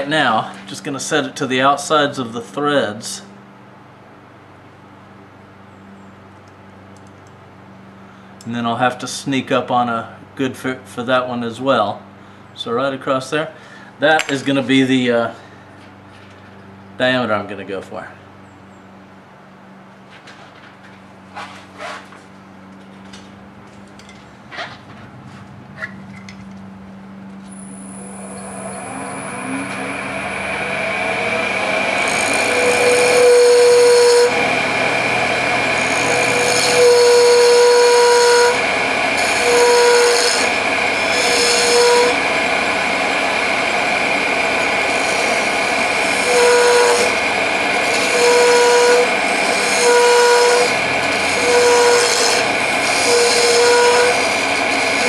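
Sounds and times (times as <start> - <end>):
wood lathe spinning: 28.0 - 55.0
turning tool cutting wood: 28.2 - 55.0.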